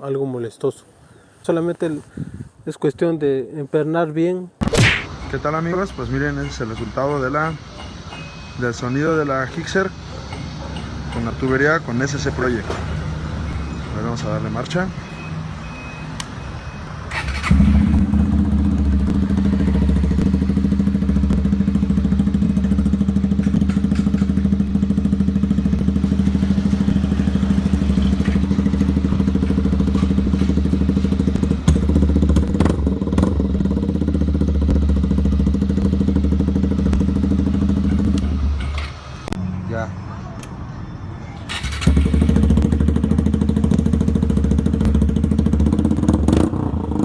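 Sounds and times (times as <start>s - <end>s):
motorcycle engine running: 17.1s - 38.8s, 41.5s - 47.0s.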